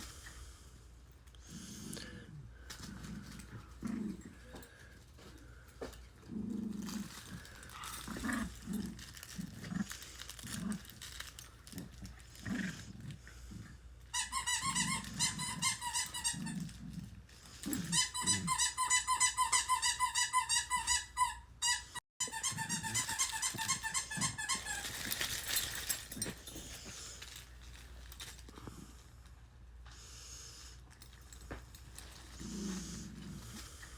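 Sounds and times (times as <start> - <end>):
puppy whining: 17.8 - 26.4.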